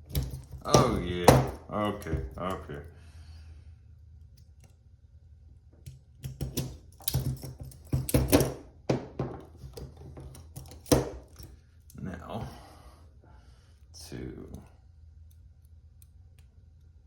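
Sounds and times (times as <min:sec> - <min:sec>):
handcuffs clicking and rattling: 0:00.0 - 0:02.9, 0:05.9 - 0:08.6, 0:09.6 - 0:12.0.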